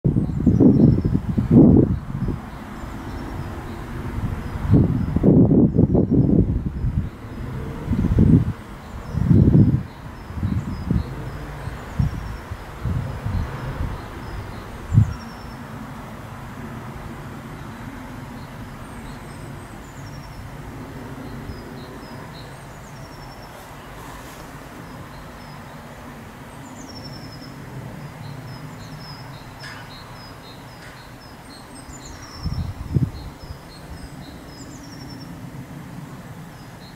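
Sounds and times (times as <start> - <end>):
small songbird singing: 0.1 - 15.7, 26.5 - 35.3.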